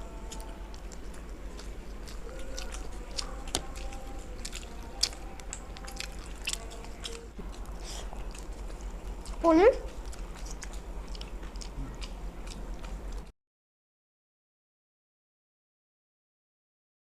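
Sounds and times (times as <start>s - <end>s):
person chewing food: 0.0s - 13.3s.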